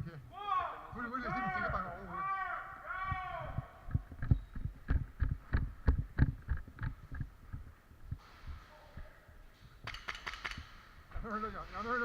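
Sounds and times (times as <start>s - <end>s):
faint rustling hiss: 3.9s - 9.9s.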